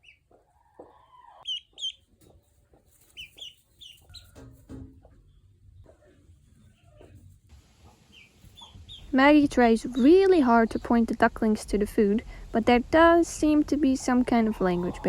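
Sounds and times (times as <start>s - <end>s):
ducklings peeping: 0.0s - 4.4s, 7.8s - 11.2s
hen clucking softly: 0.0s - 9.1s, 14.1s - 15.0s.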